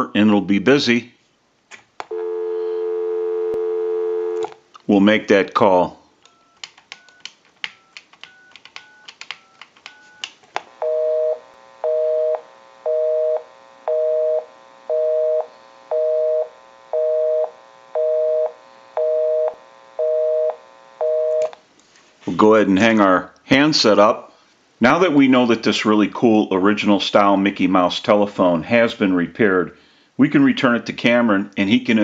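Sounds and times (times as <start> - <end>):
telephone busy signal: 2.1 - 4.5, 10.8 - 21.6
keypad clicks with touch-tone beeps: 6.3 - 10.4.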